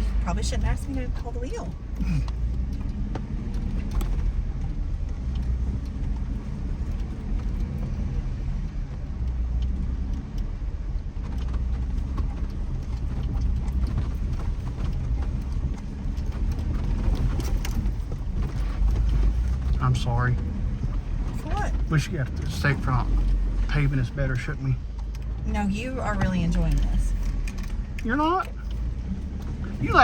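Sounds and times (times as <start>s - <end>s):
engine and tyre rumble: 0.0s - 30.0s
faint clicks and rattles: 0.0s - 30.0s.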